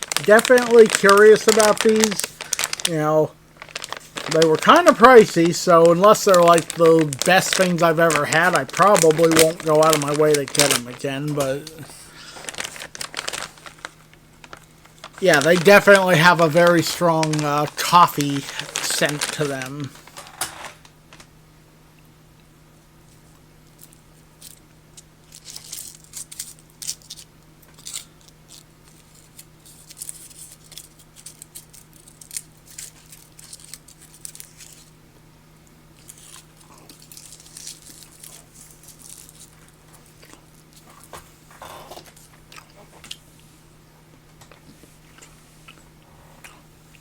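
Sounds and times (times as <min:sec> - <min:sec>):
foil wrapper crinkling: 0:00.0 - 0:21.3, 0:23.7 - 0:35.0, 0:35.6 - 0:41.2
chocolate being chewed: 0:36.0 - 0:43.5.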